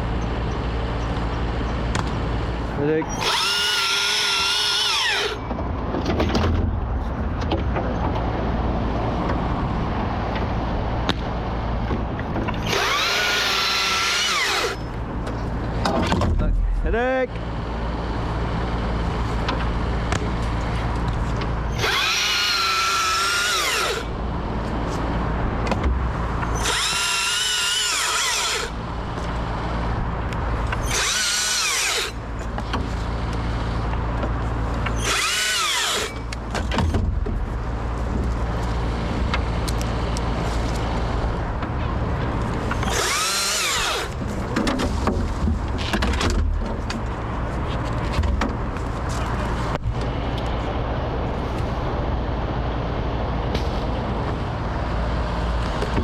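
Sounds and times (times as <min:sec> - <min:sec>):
low engine hum: 0:00.0 - 0:03.6, 0:05.0 - 0:56.0
chainsaw whining while cutting: 0:21.8 - 0:24.0, 0:26.6 - 0:28.7, 0:42.8 - 0:44.1.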